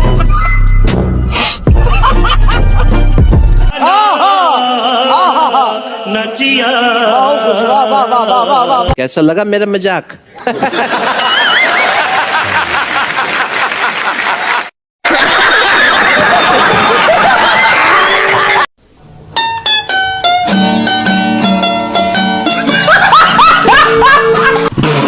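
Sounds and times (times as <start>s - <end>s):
crowd laughing or clamouring: 10.4s - 18.7s, 22.6s - 24.7s
plucked-string tune: 19.3s - 22.8s, 23.9s - 25.0s.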